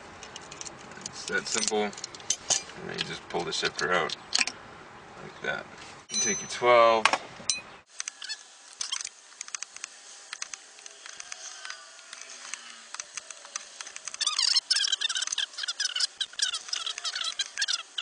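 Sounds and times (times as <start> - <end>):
squeaky metallic ringing: 6.1 - 6.7, 7.5 - 8.4.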